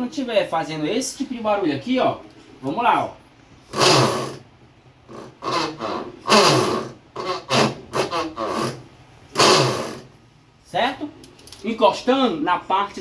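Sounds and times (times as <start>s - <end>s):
washing machine rasping grind: 3.7s - 4.5s, 5.1s - 10.2s.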